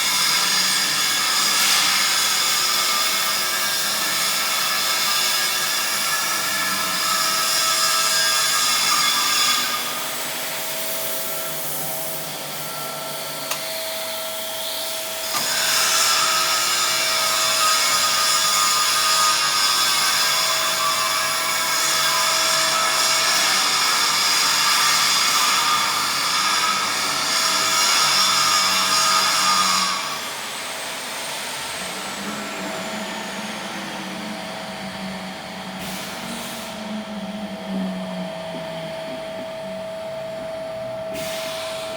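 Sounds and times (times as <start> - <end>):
industrial machinery whining: 26.8 - 41.9.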